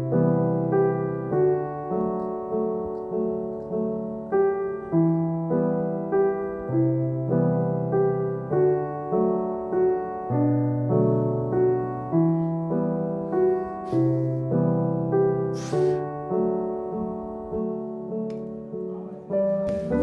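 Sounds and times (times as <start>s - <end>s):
slow solo piano piece: 0.0s - 20.0s.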